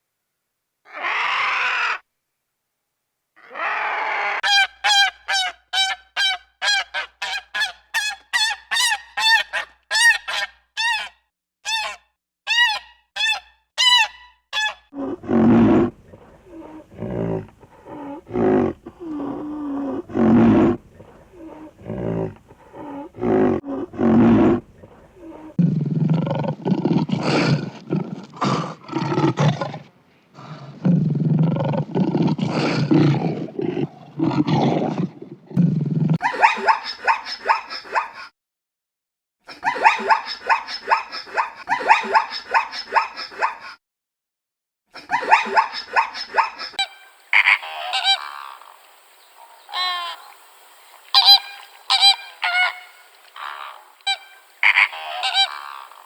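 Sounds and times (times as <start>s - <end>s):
bird honking calls: 46.8s - 56.0s.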